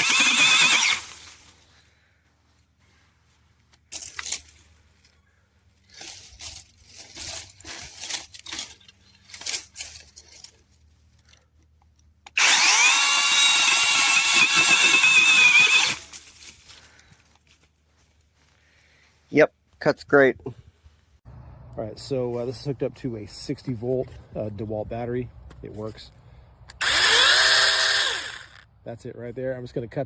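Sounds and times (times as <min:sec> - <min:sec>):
chainsaw cutting branch: 0:00.0 - 0:01.5, 0:12.3 - 0:16.6, 0:26.8 - 0:28.6
brush rustling and crackling: 0:00.1 - 0:11.7, 0:14.2 - 0:19.8.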